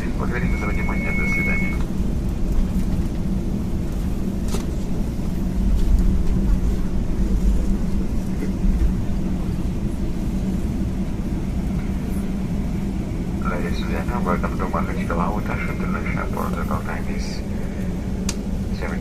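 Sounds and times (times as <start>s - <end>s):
airliner cabin rumble: 0.0s - 19.0s.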